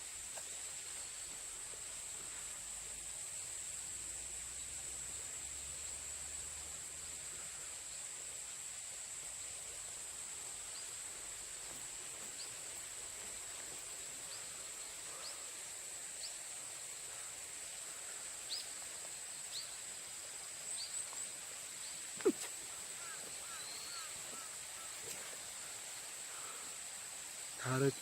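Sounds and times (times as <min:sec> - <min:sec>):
bird chirping: 0:20.7 - 0:25.3.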